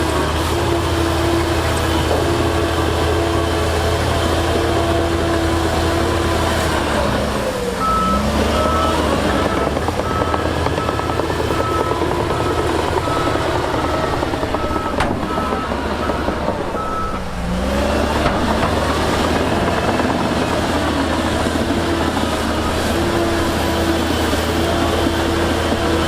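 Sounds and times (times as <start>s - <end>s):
diesel engine running: 0.0s - 26.0s
reversing alarm beeping: 7.8s - 23.7s.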